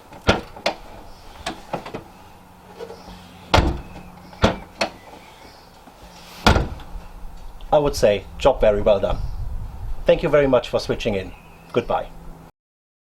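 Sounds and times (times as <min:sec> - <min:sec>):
car boot lock clicks and knocks: 0:00.1 - 0:02.1, 0:03.5 - 0:05.0, 0:06.5 - 0:06.9
boot lid heavy thump: 0:03.5 - 0:04.7, 0:06.4 - 0:06.9.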